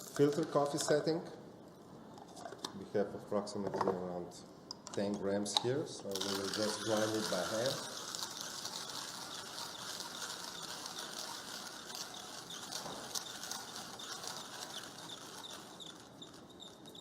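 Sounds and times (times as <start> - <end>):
coffee beans being ground: 0.0 - 0.9, 5.6 - 17.0
grinder crank clicking: 6.1 - 17.0.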